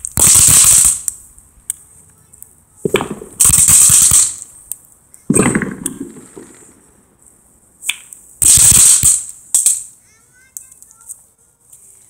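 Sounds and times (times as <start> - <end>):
firework sharp crack: 0.0 - 1.8, 2.7 - 7.2, 7.8 - 9.9
firework crackling bursts: 0.0 - 12.0
firework pop: 2.8 - 3.5, 5.3 - 6.9.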